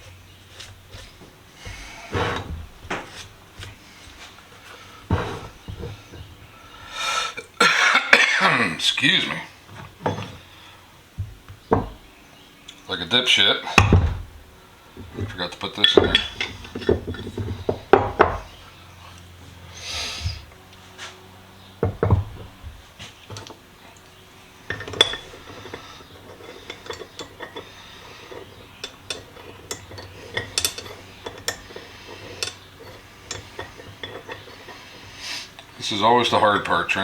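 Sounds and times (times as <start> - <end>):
metal parts clinking and scraping: 15.1 - 18.5, 23.1 - 37.0.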